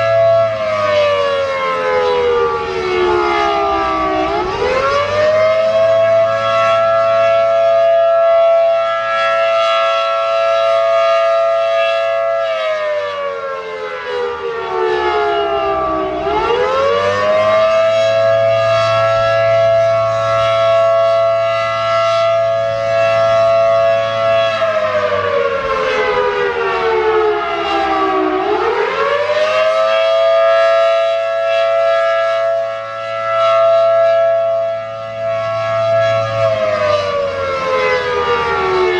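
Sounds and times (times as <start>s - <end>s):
electromechanical siren wailing: 0.0s - 38.9s.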